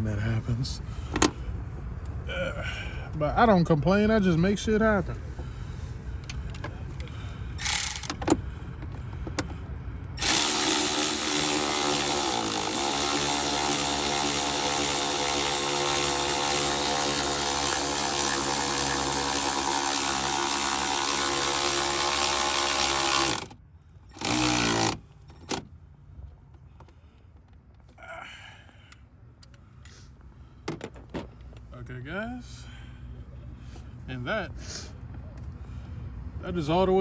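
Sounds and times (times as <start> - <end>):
cordless power tool motor: 7.6 - 8.2, 10.2 - 25.0.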